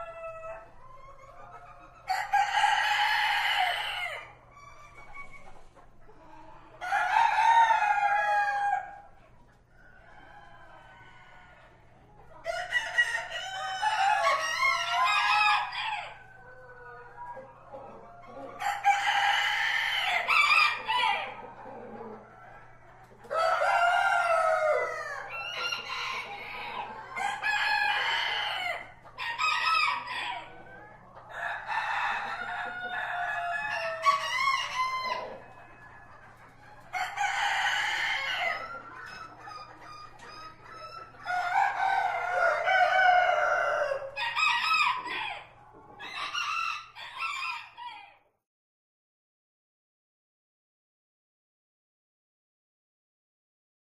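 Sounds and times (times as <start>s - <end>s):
roosters crowing: 0.0s - 0.8s, 2.0s - 4.4s, 6.8s - 9.1s, 12.4s - 17.0s, 18.4s - 30.6s, 31.2s - 48.2s.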